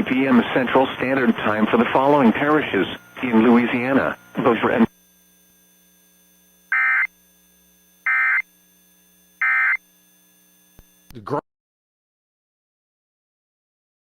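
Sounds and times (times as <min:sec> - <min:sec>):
shrill digital data tone bursts: 0:00.1 - 0:04.8.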